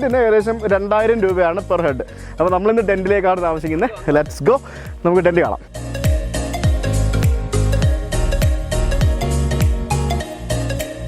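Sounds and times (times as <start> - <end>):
background music with a beat: 0.0 - 11.0
kick drum: 6.0 - 9.9.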